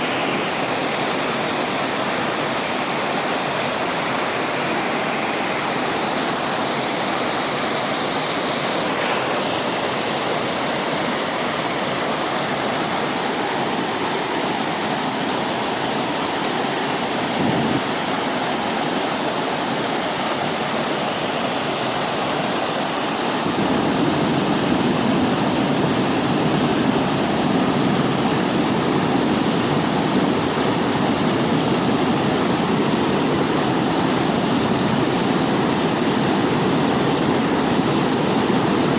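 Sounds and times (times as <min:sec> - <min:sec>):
waterfall rushing water: 0:00.0 - 0:38.9.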